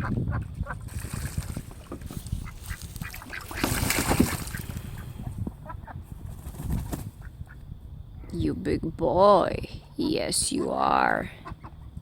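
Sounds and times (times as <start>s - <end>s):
water splashing: 0.9s - 4.9s
ducks quacking: 2.3s - 6.0s, 10.5s - 11.9s.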